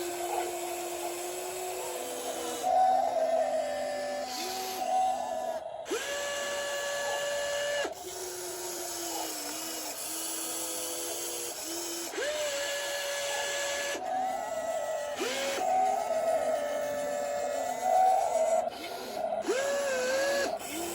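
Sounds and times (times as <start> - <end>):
toy excavator motors whining: 0.0 - 20.9.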